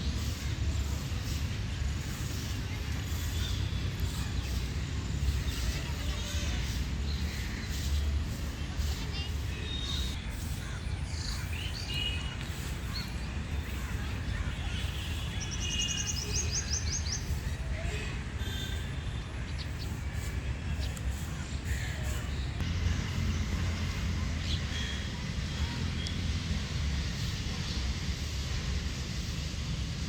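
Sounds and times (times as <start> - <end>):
birds chirping: 0.0 - 29.8.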